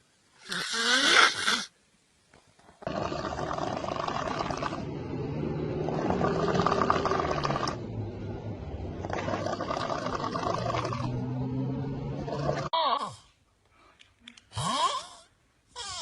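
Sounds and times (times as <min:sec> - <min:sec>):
person snoring: 0:02.8 - 0:07.8, 0:14.5 - 0:16.0
low hum: 0:03.3 - 0:12.7.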